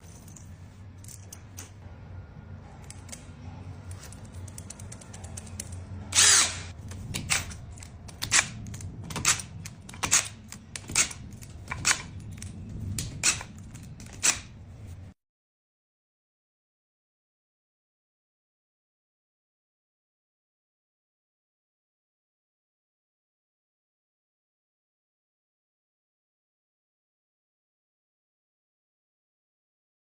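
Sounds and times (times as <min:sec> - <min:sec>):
low steady hum: 0:00.0 - 0:15.1
power drill bursts: 0:06.2 - 0:06.7.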